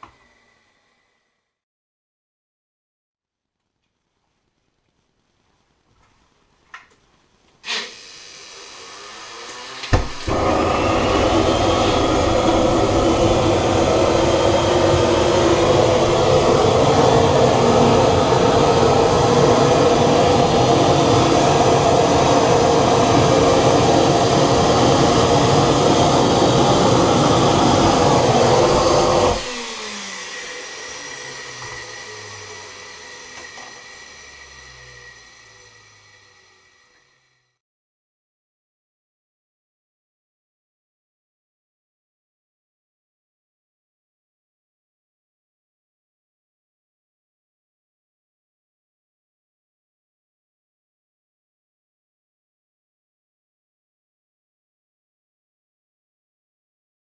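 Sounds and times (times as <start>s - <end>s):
jet engine spooling down: 7.6s - 37.6s
jet engine spinning up whine: 7.7s - 37.6s
jet engine running: 7.8s - 37.6s.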